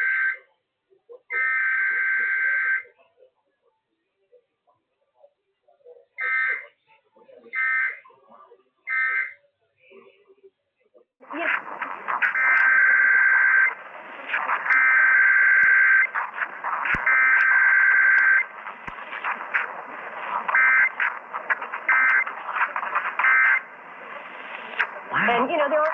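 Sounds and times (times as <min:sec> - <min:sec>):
radio static and crackle: 0:11.2 - 0:25.9.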